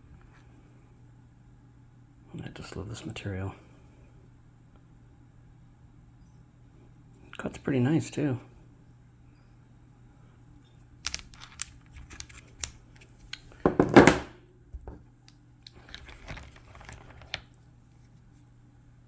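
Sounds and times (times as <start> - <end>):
stone pieces clicking and knocking: 11.0 - 14.2, 15.7 - 17.4
rustling scrape: 15.8 - 18.3.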